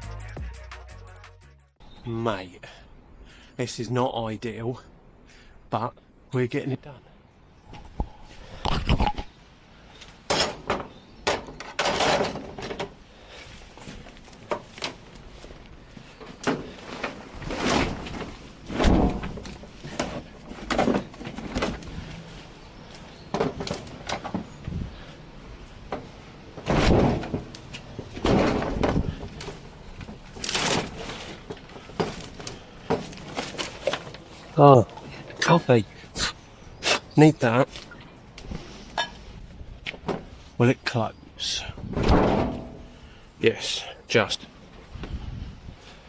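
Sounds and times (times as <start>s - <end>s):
branches thudding and crackling: 11.8s - 35.2s.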